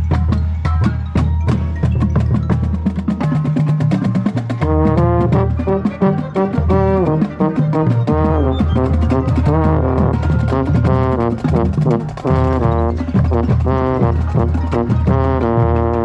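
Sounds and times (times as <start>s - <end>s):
marching band brass playing: 2.5s - 16.0s
euphonium playing close: 4.7s - 16.0s.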